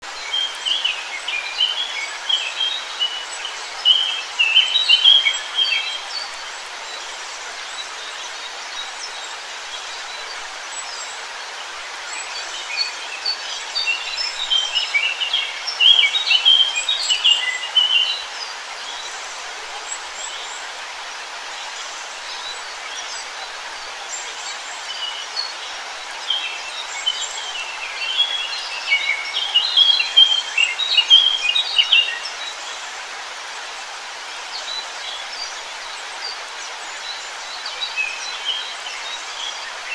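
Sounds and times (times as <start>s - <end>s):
songbirds chirping and singing: 0.2s - 9.2s, 11.9s - 20.7s, 24.0s - 32.6s.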